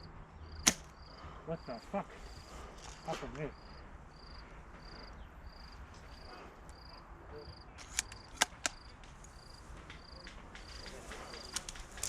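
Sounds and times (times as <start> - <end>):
insects chirping: 0.0 - 12.0
airsoft gun cracks: 0.6 - 1.0, 7.8 - 9.2.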